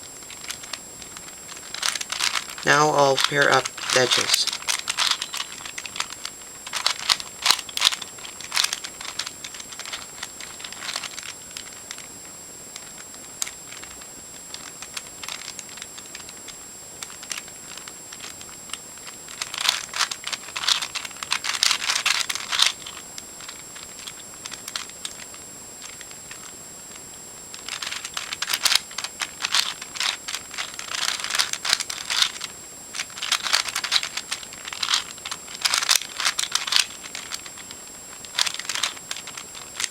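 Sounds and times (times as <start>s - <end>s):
puzzle cube layers clicking: 1.7s - 5.6s.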